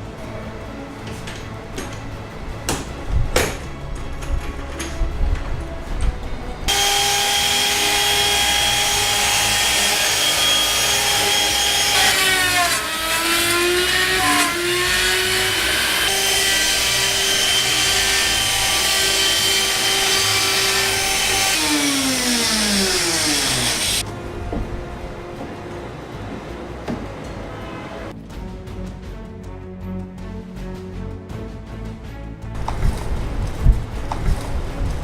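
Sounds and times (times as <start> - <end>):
power tool cutting wood: 6.7 - 24.0.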